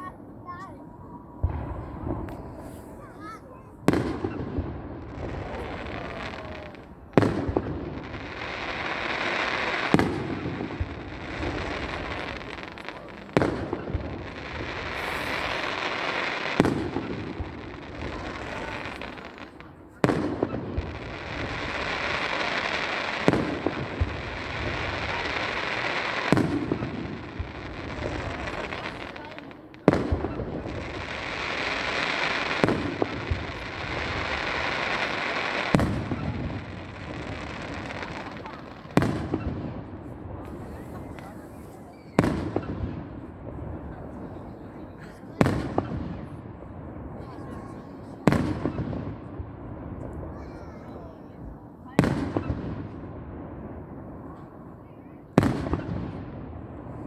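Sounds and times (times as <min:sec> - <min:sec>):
firework crackling: 0:00.0 - 0:57.0
firework shells bursting: 0:03.9 - 0:39.6.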